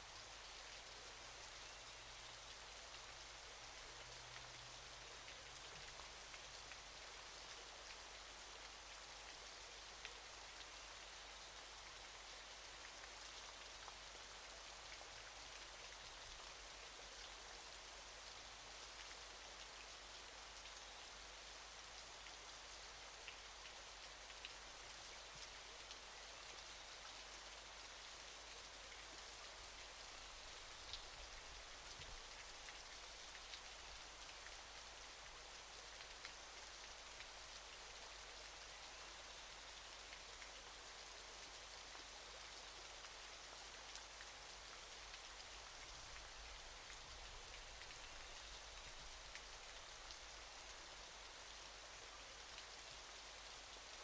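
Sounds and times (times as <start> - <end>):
waterfall hiss: 0.0 - 9.4.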